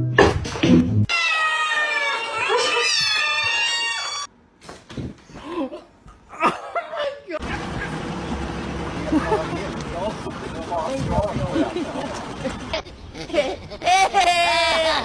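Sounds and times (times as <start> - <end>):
cat yowling: 1.1 - 4.3.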